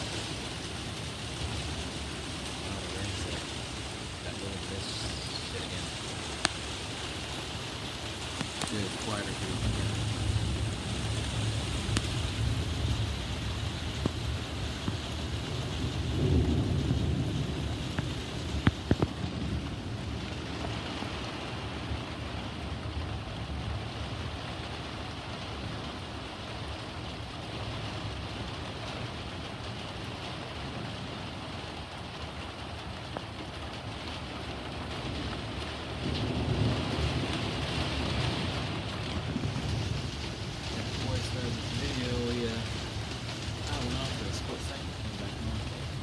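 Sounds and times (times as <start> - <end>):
thunder rumbling: 0.0 - 25.8, 34.5 - 46.0
heavy rain falling: 0.0 - 46.0
thunder cracks: 8.6 - 21.1, 35.2 - 46.0.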